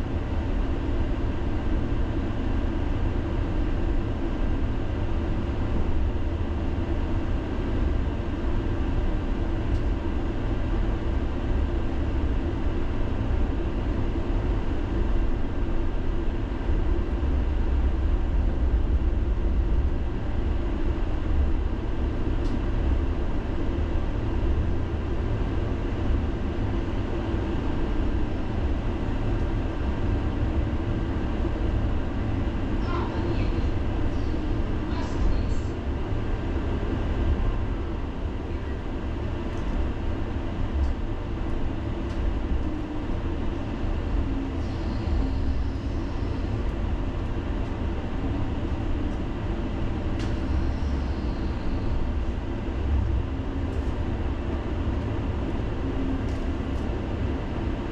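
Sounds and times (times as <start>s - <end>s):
tram wheels rumbling on rails: 0.0s - 57.9s.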